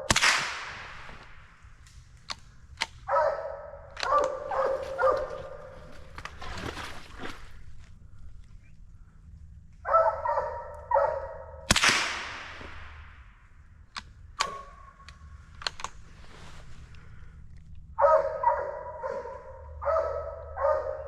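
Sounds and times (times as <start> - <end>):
gunshot with echo: 0.0 - 1.6, 11.7 - 13.2
sharp clicks: 0.0 - 3.1, 3.9 - 4.5, 13.9 - 16.0
hounds barking: 3.0 - 7.3, 9.8 - 11.7, 14.4 - 15.0, 18.0 - 21.0.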